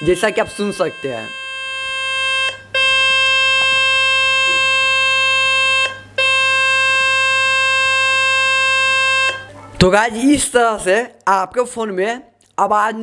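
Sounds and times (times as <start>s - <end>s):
loud buzzing tone from phone speaker: 0.0s - 9.5s.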